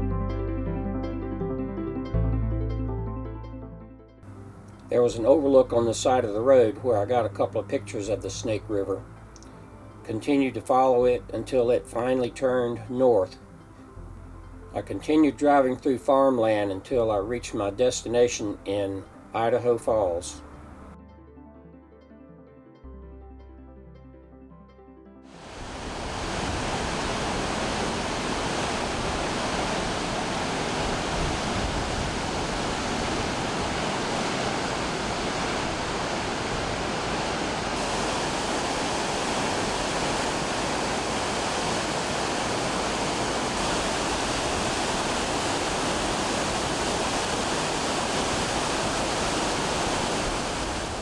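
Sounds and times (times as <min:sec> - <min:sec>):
waterfall rushing: 0:25.3 - 0:51.0.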